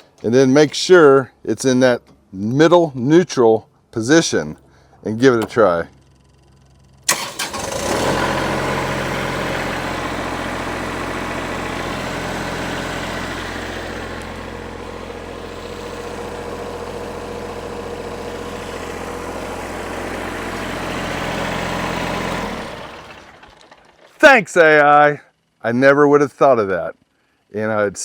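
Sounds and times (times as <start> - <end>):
diesel tractor engine idling: 4.6 - 25.9.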